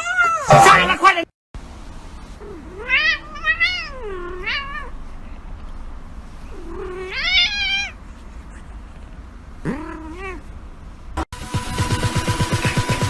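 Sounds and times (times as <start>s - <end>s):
cat meowing: 2.4s - 4.9s, 6.5s - 8.0s, 9.6s - 10.5s.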